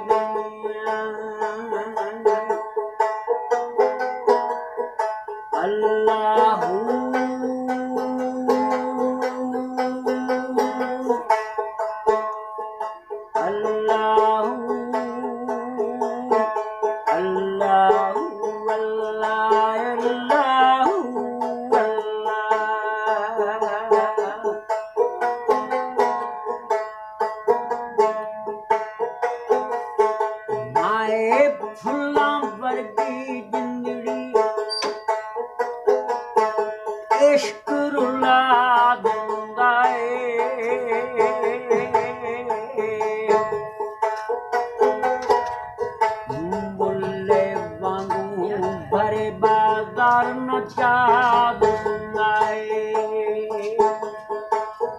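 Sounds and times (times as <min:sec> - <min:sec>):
plucked string melody: 0:00.0 - 0:54.9
held drone notes: 0:45.3 - 0:52.6.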